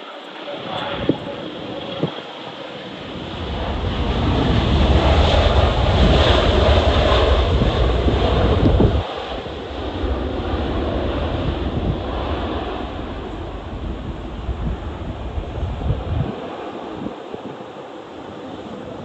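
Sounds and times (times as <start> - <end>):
jet aircraft engine: 0.0 - 19.0
wind buffeting microphone: 0.5 - 19.0.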